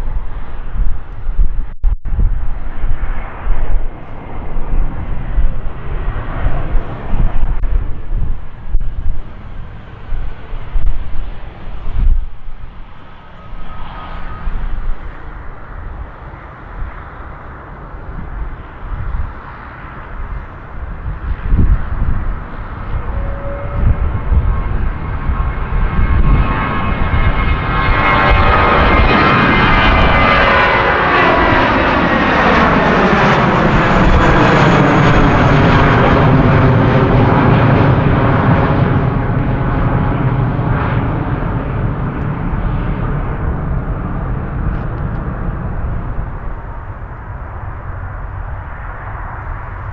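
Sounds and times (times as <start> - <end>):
jet engines rumbling: 0.0 - 49.9
faint thin whine: 8.4 - 20.5.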